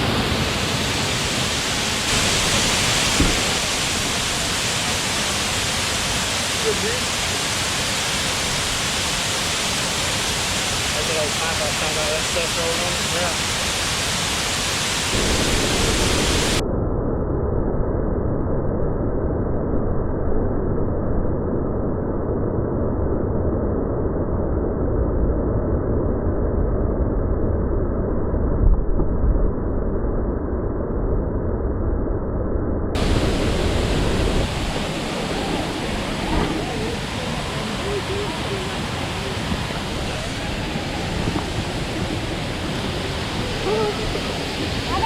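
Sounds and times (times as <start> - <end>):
wind buffeting microphone: 0.0 - 6.5, 33.0 - 45.0
water flowing over a pipe: 0.0 - 16.6, 33.0 - 45.0.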